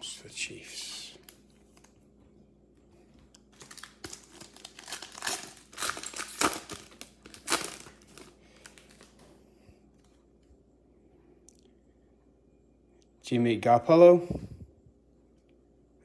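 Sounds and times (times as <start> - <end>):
plastic wrapper crinkling: 3.4 - 9.2.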